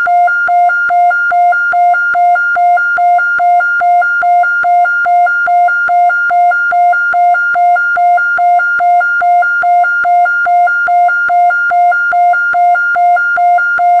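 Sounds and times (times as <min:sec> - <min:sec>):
electronic police siren two-tone: 0:00.0 - 0:14.0.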